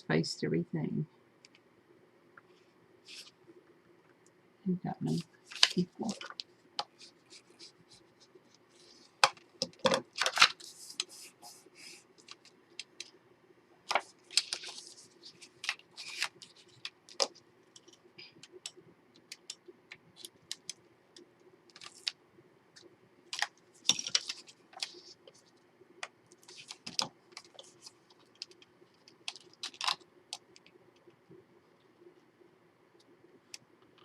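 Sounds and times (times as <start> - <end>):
faint steady hum: 0.0 - 34.0
paper rustling: 5.1 - 13.1, 13.9 - 17.9, 23.4 - 25.5, 26.4 - 30.0.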